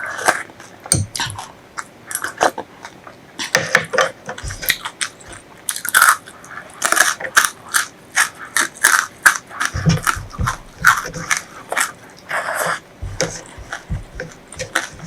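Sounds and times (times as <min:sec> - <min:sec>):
chewing and crunching food: 0:00.0 - 0:15.0.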